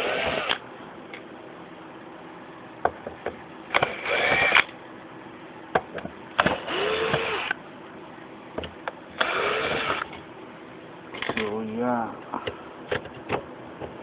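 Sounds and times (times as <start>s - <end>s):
power drill motor spinning: 0.0s - 0.6s, 3.7s - 4.7s, 6.4s - 7.6s, 9.2s - 10.2s
drill bit clicking on screw heads: 3.7s - 4.7s, 6.4s - 7.6s.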